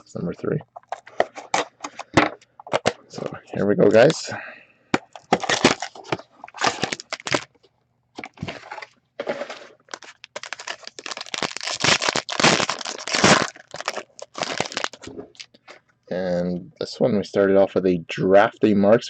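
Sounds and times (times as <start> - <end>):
plastic wrapping being torn open: 5.3 - 7.5, 9.9 - 15.5.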